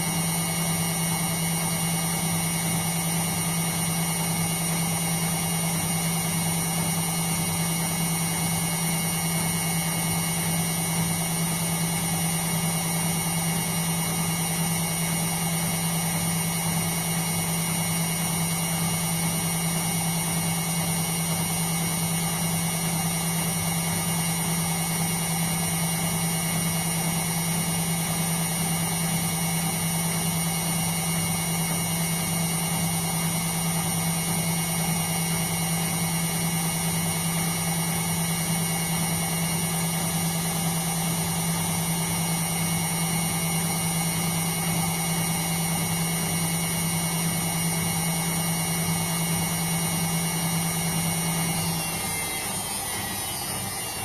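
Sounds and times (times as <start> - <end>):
washing machine motor hum: 0.0 - 54.0
high motor whine: 50.9 - 54.0.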